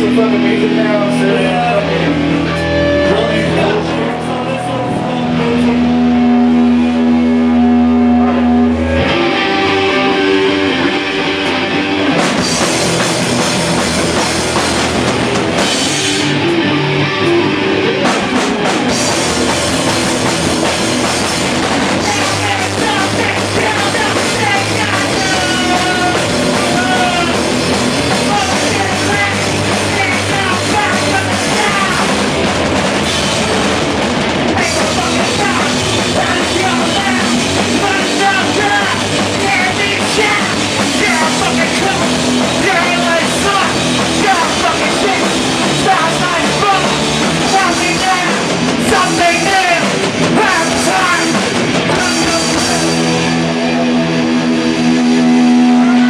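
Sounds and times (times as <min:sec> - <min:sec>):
drums and cymbals: 0:00.0 - 0:56.0
electric guitar and bass chords: 0:00.0 - 0:56.0.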